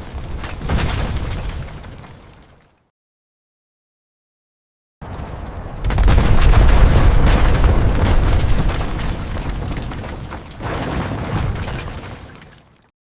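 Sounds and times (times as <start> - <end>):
debris crashing: 0.0 - 2.8, 5.0 - 12.9
explosion with deep rumble: 5.0 - 11.9.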